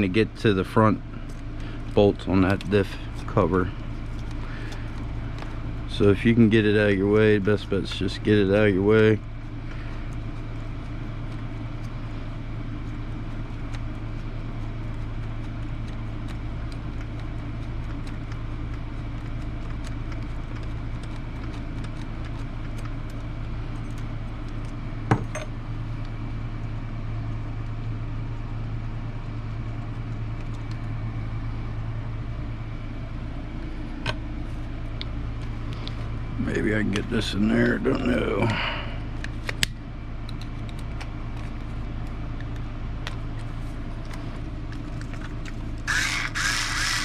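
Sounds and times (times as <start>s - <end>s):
workshop hum: 0.0s - 47.0s
small tools clicking: 45.9s - 47.0s.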